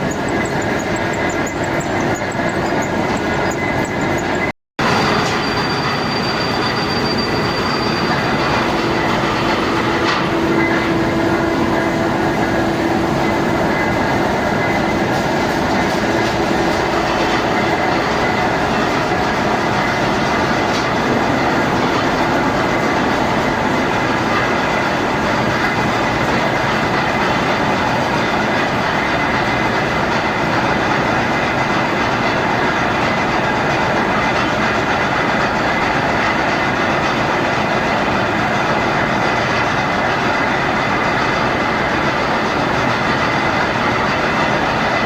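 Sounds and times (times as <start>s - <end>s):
machine tool running: 0.0s - 45.0s.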